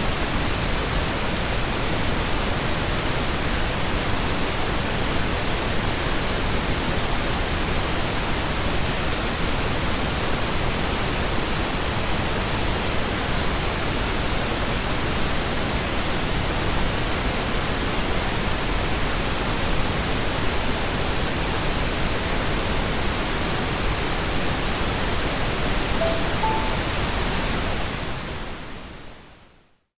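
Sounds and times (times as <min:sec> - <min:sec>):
soft alarm tones: 0:26.0 - 0:27.6.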